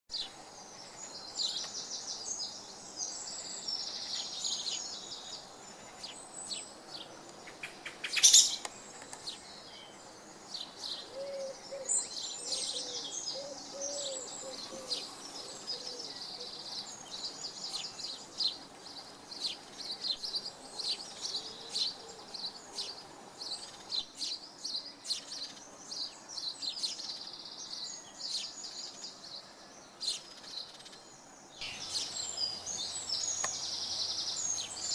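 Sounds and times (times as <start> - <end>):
small birds chirping and singing: 0.1 - 34.9
low repeated bird call: 10.6 - 34.9.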